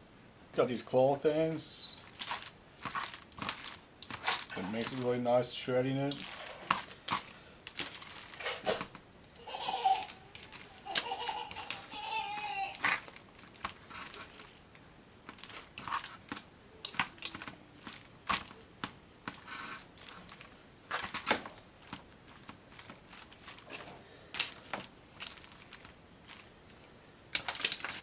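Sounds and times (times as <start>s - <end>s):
meat tearing and scraping: 2.1s - 5.2s, 6.1s - 9.0s, 9.8s - 14.6s, 15.3s - 18.6s, 19.3s - 26.6s.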